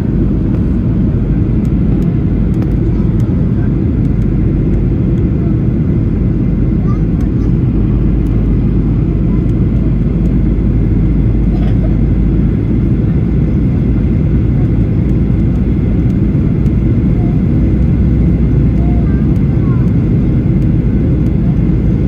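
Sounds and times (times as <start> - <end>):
jet engines rumbling: 0.0 - 22.0.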